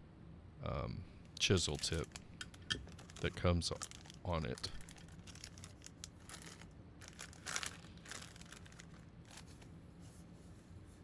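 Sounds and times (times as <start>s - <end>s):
packaging crinkling: 1.4s - 9.7s.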